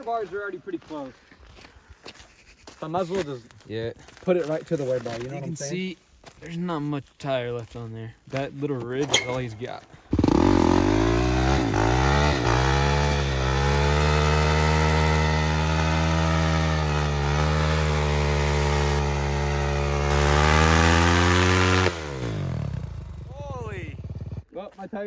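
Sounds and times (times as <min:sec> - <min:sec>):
rear tire spinning: 0:10.1 - 0:24.4
motorcycle engine revving: 0:10.1 - 0:24.5.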